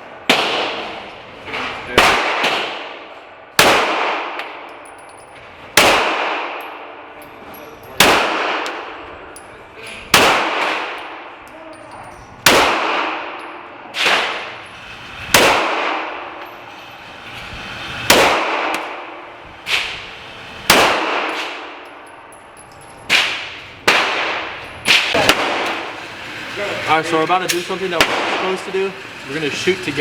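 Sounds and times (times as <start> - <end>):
pistol shots with ringing echo: 0.2 - 1.0, 2.0 - 4.8, 5.7 - 7.2, 7.9 - 9.4, 10.0 - 11.4, 12.4 - 14.5, 15.3 - 16.2, 18.1 - 19.1, 20.6 - 21.9, 23.1 - 25.9.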